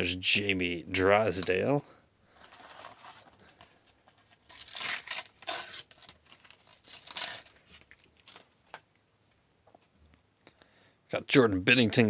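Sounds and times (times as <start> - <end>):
wrapper being torn and crinkled: 2.5 - 8.8.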